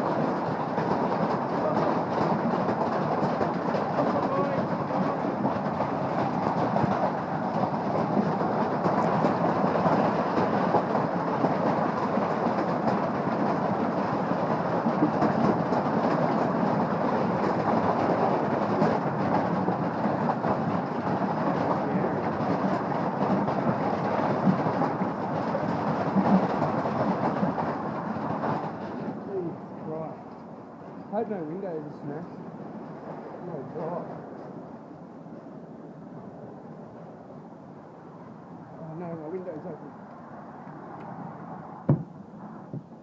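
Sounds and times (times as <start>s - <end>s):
hailstones striking a roof: 0.0s - 29.5s.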